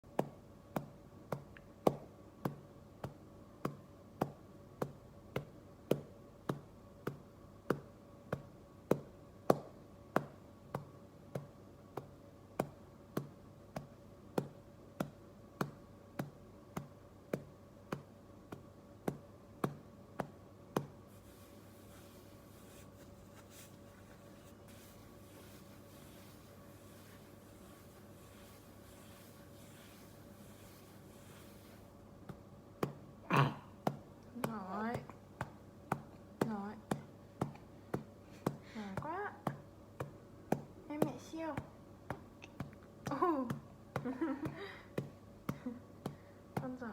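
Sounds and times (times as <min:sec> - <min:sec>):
hand patting a back: 0:00.1 - 0:33.1.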